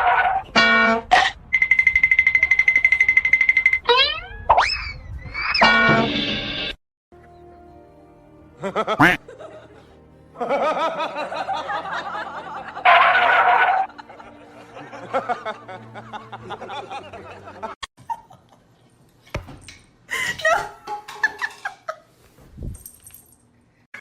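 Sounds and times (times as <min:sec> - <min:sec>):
person laughing: 0:08.6 - 0:13.3.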